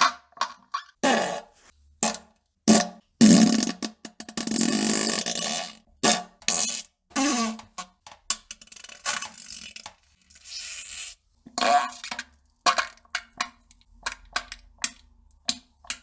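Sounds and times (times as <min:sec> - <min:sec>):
loud farts: 0:02.7 - 0:03.8.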